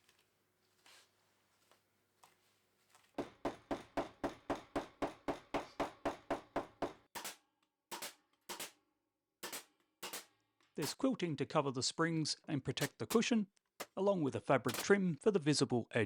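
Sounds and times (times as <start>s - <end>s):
staple gun firing: 7.2s - 8.8s, 9.4s - 11.0s, 12.8s - 13.9s, 14.7s - 14.9s.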